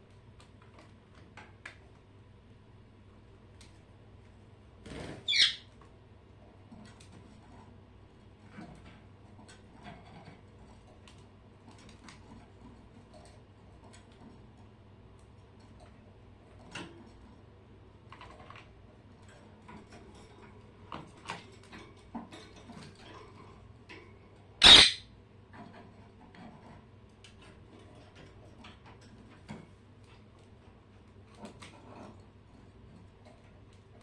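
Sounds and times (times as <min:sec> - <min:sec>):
birds moving in a cage: 0:00.0 - 0:34.0
bird squawking: 0:05.2 - 0:05.7, 0:24.6 - 0:25.1.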